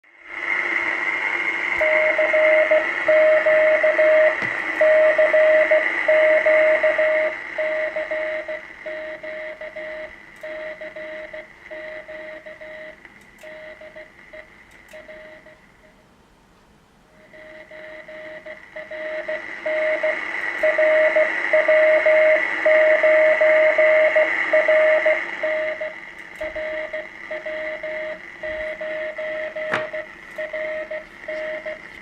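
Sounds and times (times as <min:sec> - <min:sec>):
loud radio hiss: 0:00.1 - 0:07.9, 0:17.2 - 0:26.4
radio beat tone in long dashes: 0:00.3 - 0:12.9, 0:17.2 - 0:31.9.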